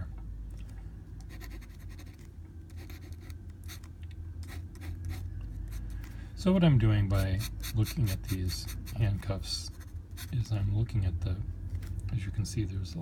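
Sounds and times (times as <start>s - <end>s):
pen nib scratching paper: 1.3s - 6.0s, 7.2s - 9.1s.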